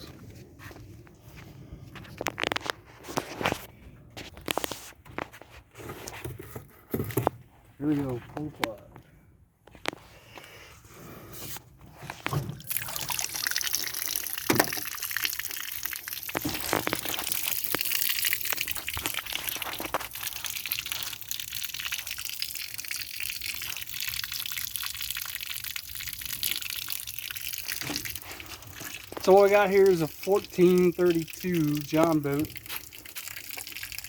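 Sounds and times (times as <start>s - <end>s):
water gushing into boat hull: 12.6s - 34.0s.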